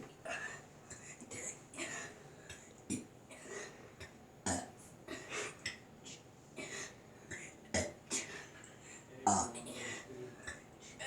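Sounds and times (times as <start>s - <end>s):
boy burping: 9.3s - 9.8s.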